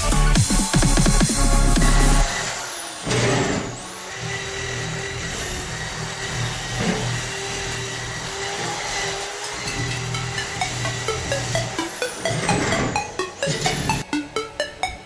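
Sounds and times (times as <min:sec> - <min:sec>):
electronic music with synth: 0:00.0 - 0:02.3, 0:09.4 - 0:15.0.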